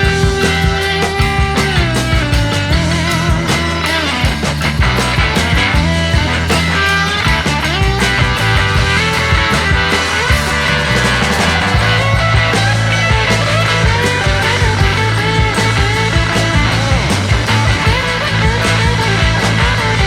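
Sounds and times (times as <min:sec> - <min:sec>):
rock music with electric guitar: 0:00.0 - 0:20.0.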